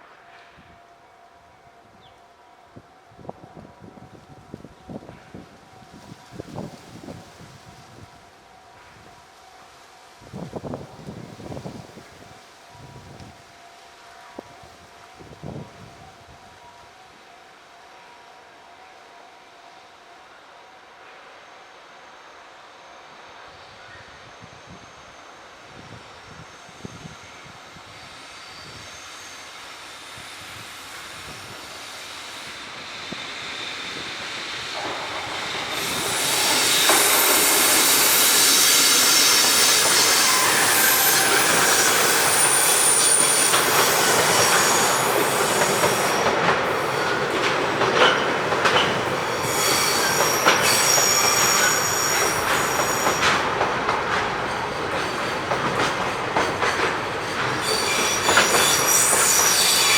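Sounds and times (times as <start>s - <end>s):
freight train passing: 0.0s - 59.9s
high-pitched wheel squeal: 26.8s - 47.2s, 48.7s - 53.4s, 57.2s - 59.9s
wheels clattering over rail joints: 34.7s - 59.9s.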